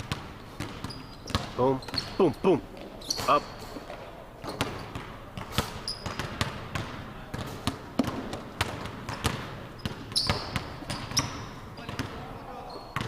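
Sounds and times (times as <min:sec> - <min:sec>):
basketball bouncing on gym floor: 0:00.0 - 0:12.3
sneaker squeaks: 0:00.4 - 0:06.5, 0:07.4 - 0:13.0.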